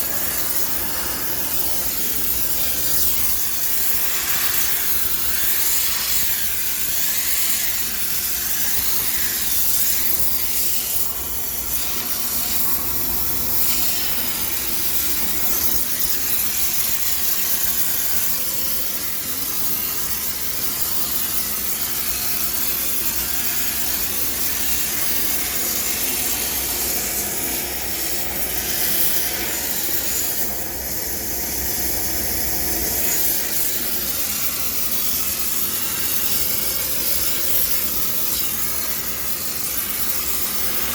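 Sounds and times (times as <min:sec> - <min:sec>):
steam cleaner hissing: 0:00.0 - 0:40.9.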